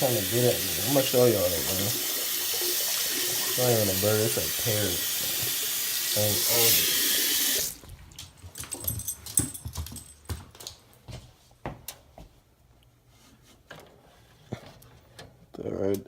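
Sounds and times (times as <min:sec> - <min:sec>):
water running from a tap: 0:00.0 - 0:07.8.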